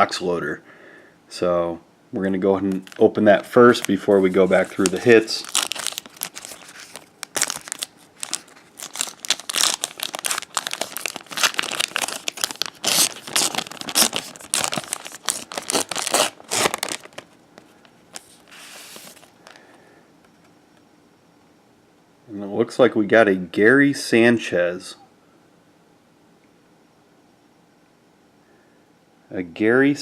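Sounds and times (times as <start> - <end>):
wrapper crinkling and tearing: 2.7 - 19.6.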